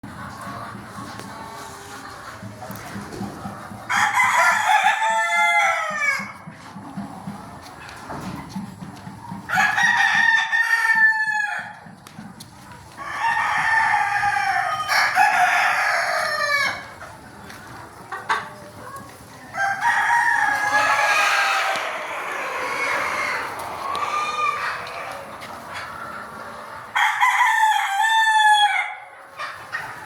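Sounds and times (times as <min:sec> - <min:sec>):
roosters crowing: 0:03.9 - 0:06.4, 0:09.5 - 0:11.8, 0:13.0 - 0:16.9, 0:19.5 - 0:29.5.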